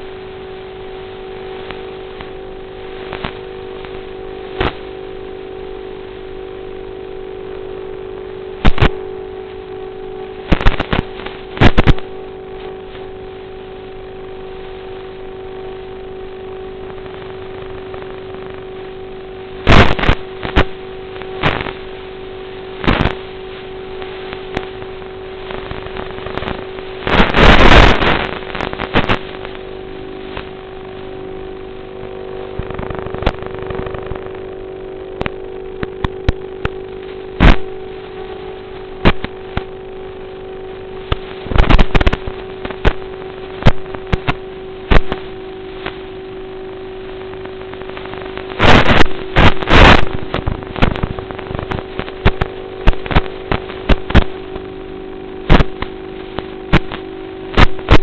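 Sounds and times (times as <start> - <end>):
sharp crackles: 0.0 - 58.0.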